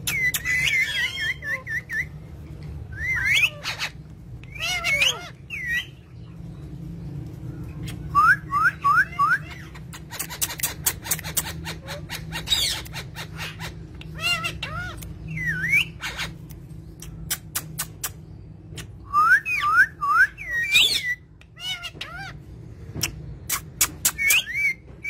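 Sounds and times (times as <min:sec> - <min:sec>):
parrot whistling: 0:02.9 - 0:06.0.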